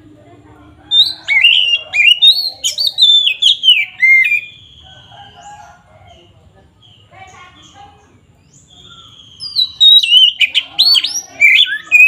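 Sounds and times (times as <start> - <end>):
bird singing whistled notes: 0.9 - 5.6, 8.4 - 12.0.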